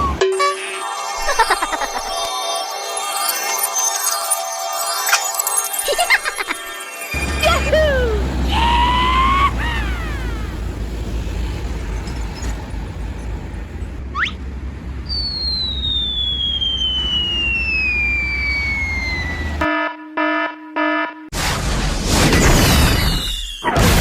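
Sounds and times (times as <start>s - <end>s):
rising whistle: 0.0s - 1.6s, 15.1s - 19.7s, 23.0s - 23.7s
falling whistle: 0.0s - 1.7s, 7.5s - 10.1s, 15.1s - 19.7s, 22.7s - 23.8s.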